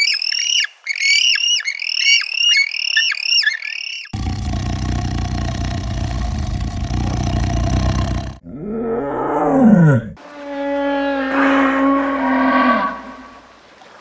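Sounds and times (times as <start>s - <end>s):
cow mooing: 4.1s - 13.5s.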